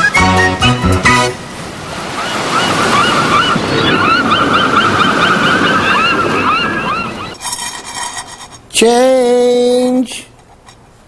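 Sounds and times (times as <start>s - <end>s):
ocean waves washing on shore: 1.0s - 7.4s
high bird cries: 2.2s - 7.4s.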